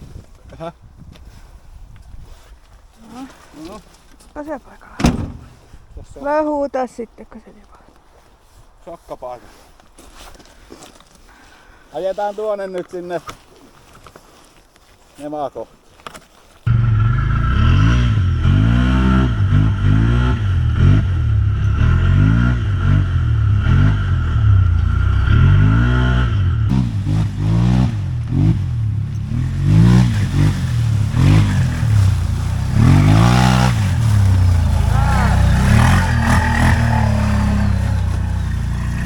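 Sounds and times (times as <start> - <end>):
atv engine revving: 16.7 - 39.0.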